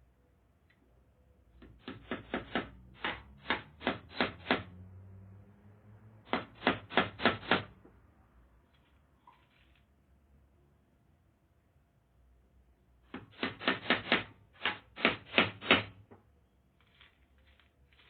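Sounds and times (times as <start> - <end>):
hammer driving nails: 1.6 - 4.7, 6.3 - 7.8, 13.1 - 16.2.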